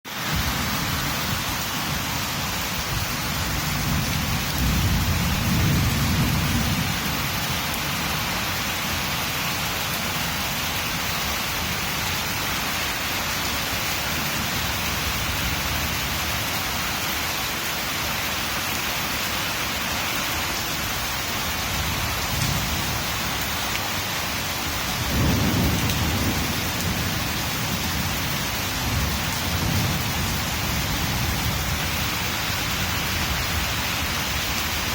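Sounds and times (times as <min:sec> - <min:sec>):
heavy rain falling: 0:00.0 - 0:34.9
thunder rumbling: 0:00.3 - 0:09.1, 0:21.6 - 0:23.6, 0:24.7 - 0:34.9.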